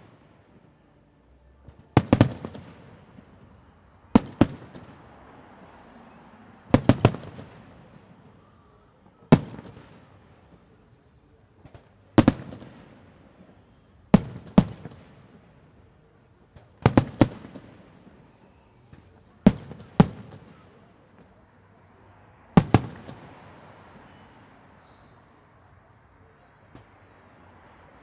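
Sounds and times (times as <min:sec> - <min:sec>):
fireworks bangs: 0:01.6 - 0:10.8, 0:11.6 - 0:25.0.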